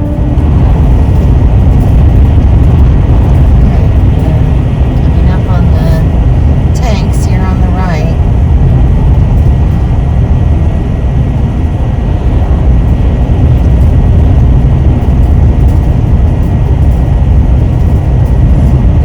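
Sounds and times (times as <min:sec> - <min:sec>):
vehicle road and engine rumble: 0:00.0 - 0:19.0.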